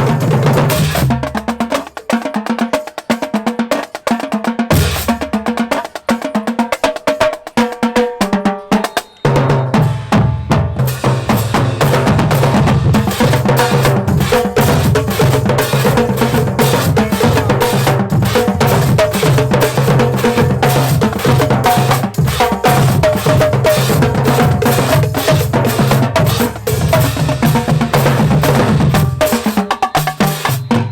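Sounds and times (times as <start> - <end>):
drumline playing a cadence: 0.0 - 30.9
bass drums booming: 9.8 - 29.2.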